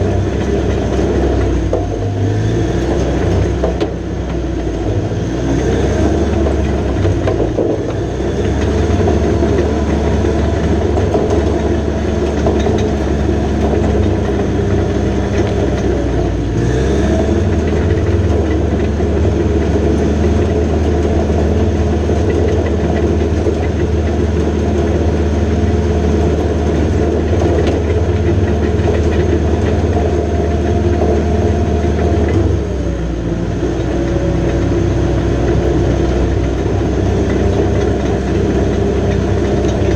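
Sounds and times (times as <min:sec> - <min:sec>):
diesel engine under load: 0:00.0 - 0:39.9
tracks rattling: 0:06.0 - 0:39.9.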